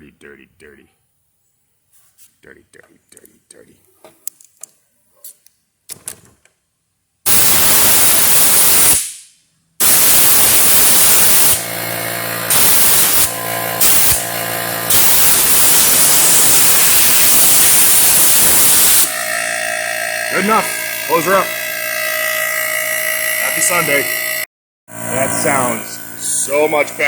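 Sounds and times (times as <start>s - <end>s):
compressed air hissing: 7.3s - 19.2s
pitched hum: 9.8s - 27.0s.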